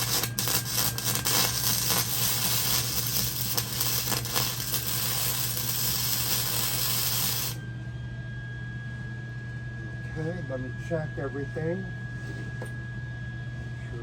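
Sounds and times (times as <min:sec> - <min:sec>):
welding arc crackling: 0:00.0 - 0:07.6.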